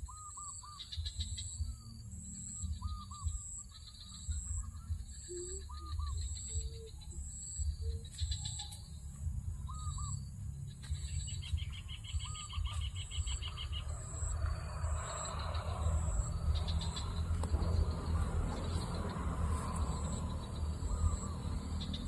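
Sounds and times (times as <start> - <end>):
bird calling in paired notes: 0.0 - 14.0
steady low rumble: 0.0 - 22.0.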